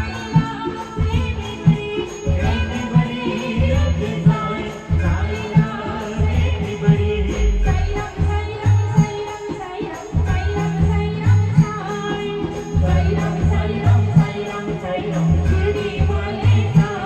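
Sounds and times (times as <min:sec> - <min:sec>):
heavy drum beat: 0:00.0 - 0:09.3.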